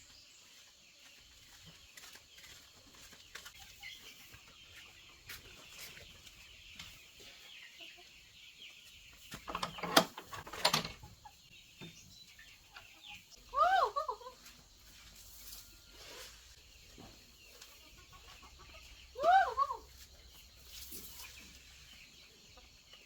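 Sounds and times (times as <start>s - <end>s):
chickens clucking: 0.5s - 23.0s.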